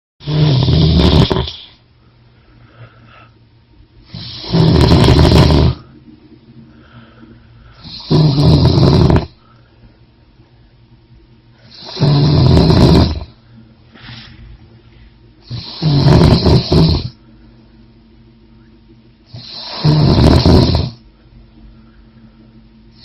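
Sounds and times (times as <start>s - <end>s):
loud snoring: 0.2s - 1.8s, 4.1s - 5.9s, 7.8s - 9.4s, 11.6s - 13.4s, 15.4s - 17.2s, 19.3s - 21.0s
soft breaths: 1.4s - 4.5s, 5.7s - 8.2s, 13.3s - 15.8s, 20.9s - 23.0s.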